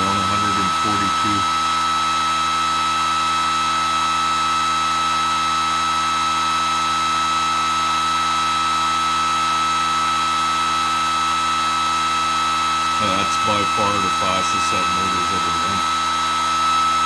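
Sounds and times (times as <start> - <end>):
electric motor whine: 0.0 - 17.0.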